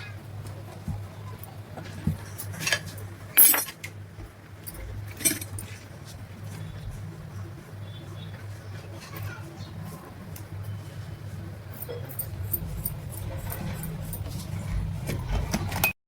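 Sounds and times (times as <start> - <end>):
metal tools clinking: 2.3 - 3.8, 4.6 - 5.8, 11.8 - 15.5
steady low hum: 9.7 - 16.0.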